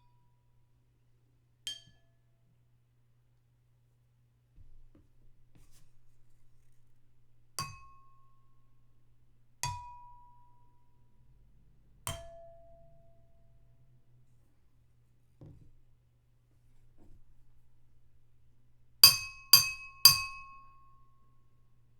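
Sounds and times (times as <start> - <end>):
spoon tapping drinking glasses: 19.0 - 20.7.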